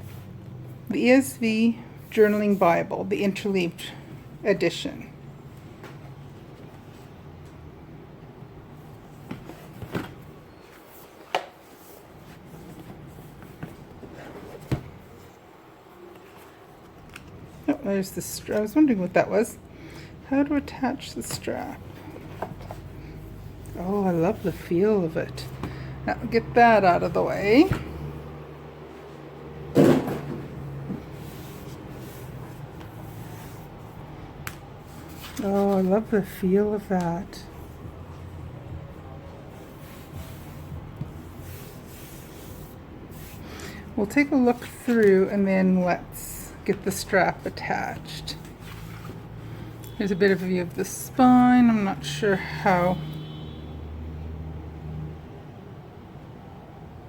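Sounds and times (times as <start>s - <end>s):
soft rustling of packaging: 30.6s - 51.2s.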